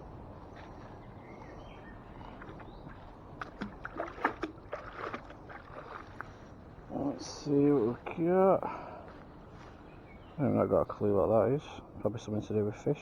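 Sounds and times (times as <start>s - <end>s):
water splashing and dripping: 2.4s - 6.4s.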